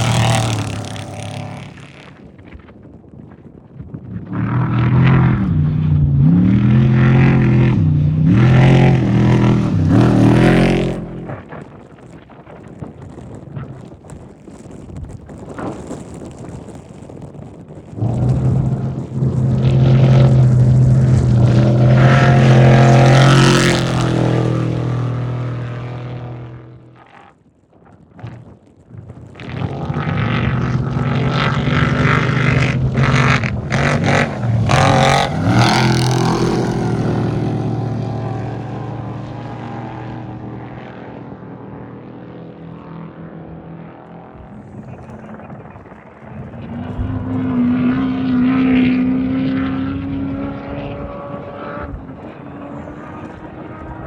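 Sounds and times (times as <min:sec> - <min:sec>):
race vehicle engines passing: 0:00.0 - 0:02.1, 0:04.4 - 0:11.5, 0:18.0 - 0:27.0, 0:29.4 - 0:54.0.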